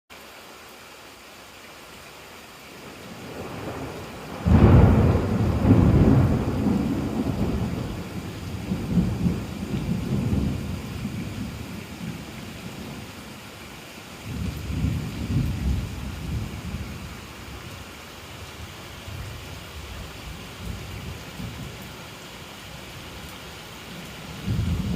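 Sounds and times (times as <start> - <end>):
steady rain: 0.1 - 24.9
thunder rumbling: 3.0 - 13.3, 14.2 - 17.8, 24.3 - 24.9.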